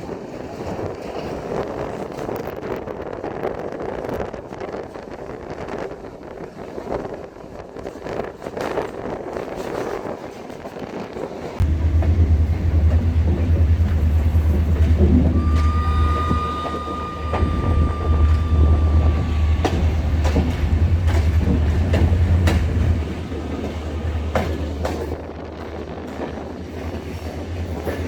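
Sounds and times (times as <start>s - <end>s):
train rumbling: 7.4s - 28.0s
high steady tone: 11.6s - 25.2s
wheels clicking over rail joints: 11.6s - 28.0s.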